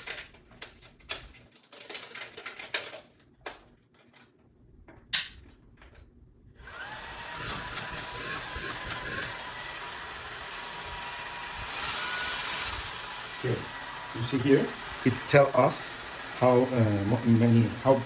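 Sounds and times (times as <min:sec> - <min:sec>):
plastic parts clicking and knocking: 0:00.0 - 0:04.3
vacuum motor whining: 0:06.6 - 0:18.0.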